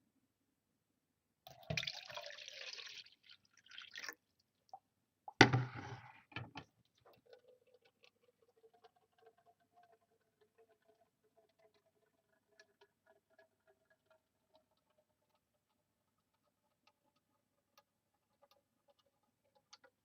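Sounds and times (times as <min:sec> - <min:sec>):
faint water drips: 0:01.4 - 0:05.4, 0:06.6 - 0:20.0
water pouring into pitcher: 0:01.5 - 0:04.4, 0:05.4 - 0:15.8
pitcher knock: 0:05.4 - 0:06.6.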